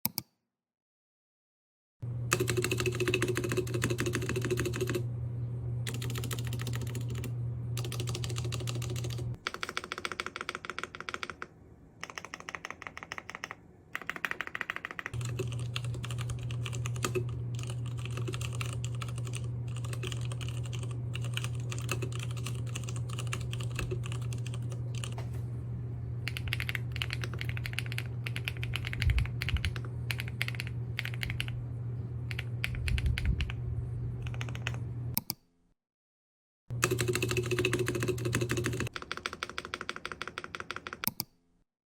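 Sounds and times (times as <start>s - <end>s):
steady low hum: 2.0s - 9.4s, 15.1s - 35.2s
mechanical keyboard typing: 2.3s - 5.1s, 5.9s - 25.2s, 26.2s - 31.6s, 32.3s - 33.6s, 34.2s - 35.4s, 36.8s - 41.3s.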